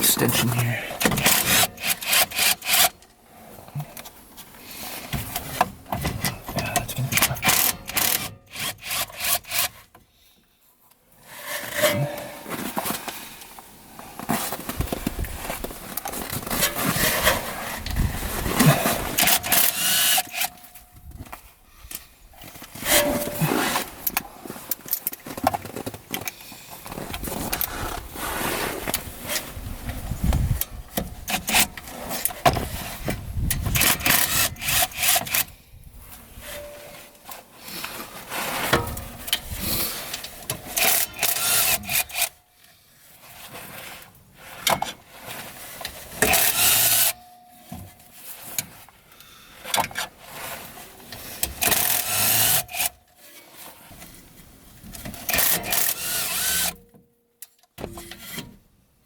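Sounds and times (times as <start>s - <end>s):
ratchet wrench rasping: 1.2s - 2.9s, 46.3s - 47.2s, 51.6s - 52.9s.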